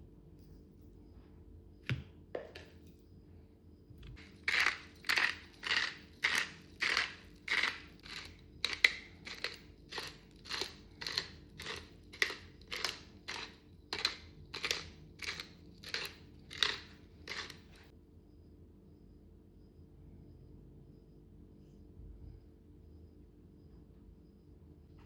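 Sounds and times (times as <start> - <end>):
rhythmic food crunching strokes: 4.2 - 17.9.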